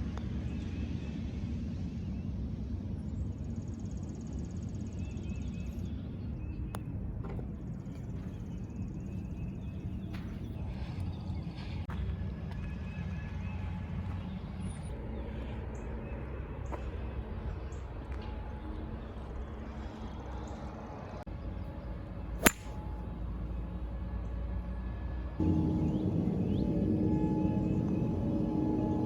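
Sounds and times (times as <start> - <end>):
golf club striking ball: 22.4 - 22.8.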